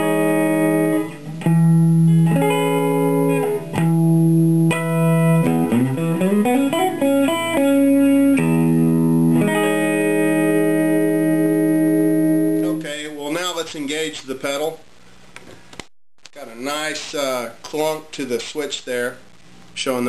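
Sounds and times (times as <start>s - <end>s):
electric guitar chords and notes: 0.0s - 12.8s.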